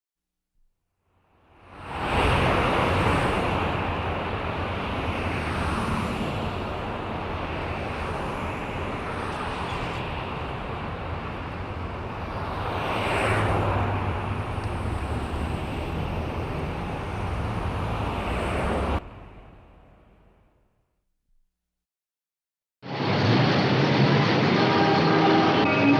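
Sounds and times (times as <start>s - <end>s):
traffic rumble: 1.9s - 20.3s.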